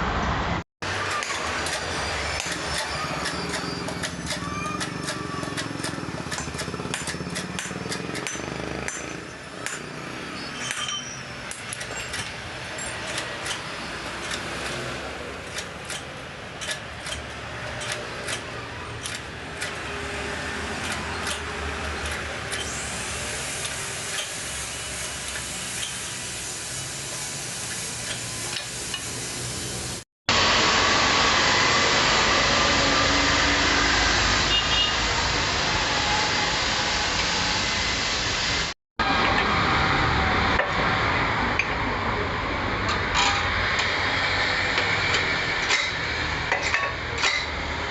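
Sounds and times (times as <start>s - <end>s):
passing traffic rushing: 0.0s - 47.9s
hand tools clicking and knocking: 1.0s - 22.8s, 42.8s - 47.6s.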